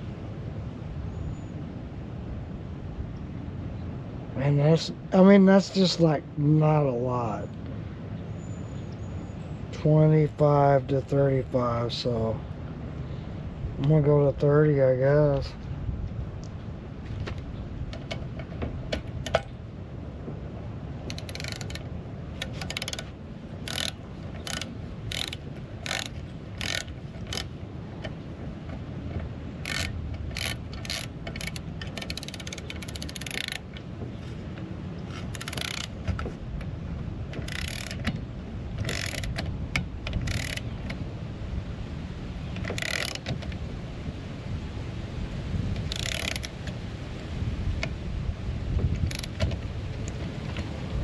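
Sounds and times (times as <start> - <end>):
ratcheting torque wrench clicking: 21.1 - 21.8, 22.4 - 27.5, 29.6 - 33.7, 35.1 - 36.2, 37.3 - 38.2, 38.8 - 41.0, 42.6 - 43.5, 45.8 - 46.8, 49.0 - 50.2.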